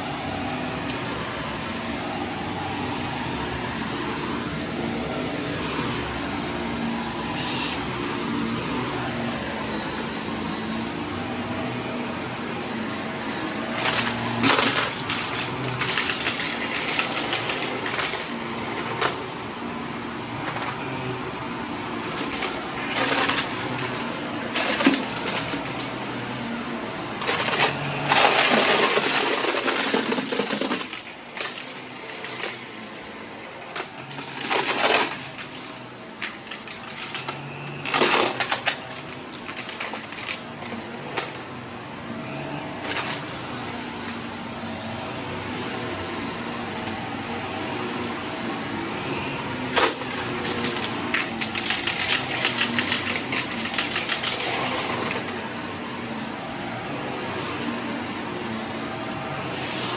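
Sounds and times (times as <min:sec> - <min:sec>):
vacuum cleaner motor: 0:00.0 - 0:59.9
debris rattling up nozzle: 0:13.7 - 0:18.4, 0:33.9 - 0:41.3, 0:49.7 - 0:55.3.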